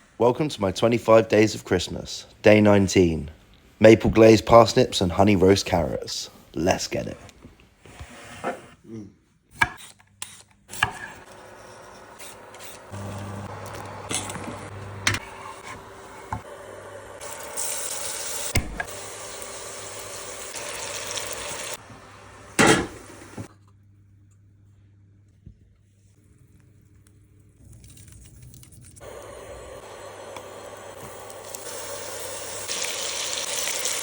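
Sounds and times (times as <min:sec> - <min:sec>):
vegetables sizzling in oil: 0:11.0 - 0:23.5, 0:29.0 - 0:34.0.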